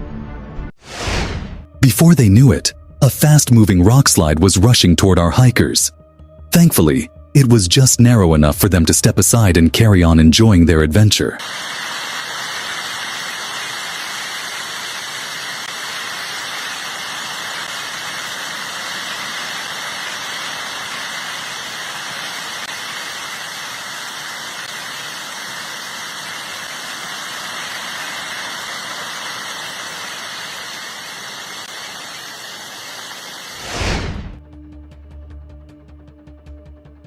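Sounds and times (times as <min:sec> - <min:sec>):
steady hissing rush: 0:11.1 - 0:34.4.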